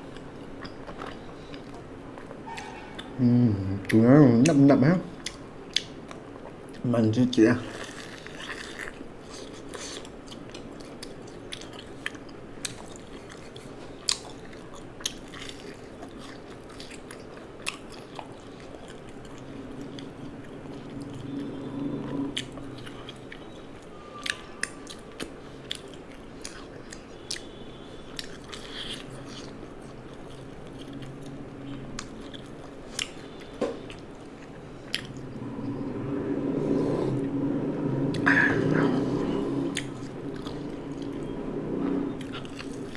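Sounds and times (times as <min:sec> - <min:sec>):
person chewing crunchy food: 0:00.0 - 0:04.6, 0:07.6 - 0:35.4, 0:38.1 - 0:41.4, 0:42.1 - 0:42.9.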